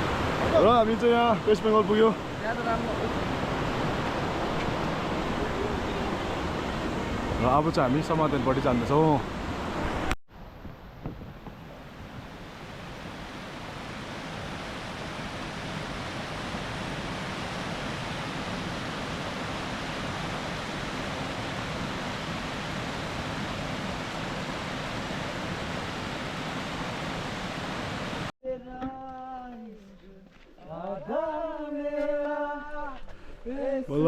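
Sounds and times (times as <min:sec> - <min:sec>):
rushing river water: 0:00.0 - 0:10.2, 0:11.3 - 0:28.3.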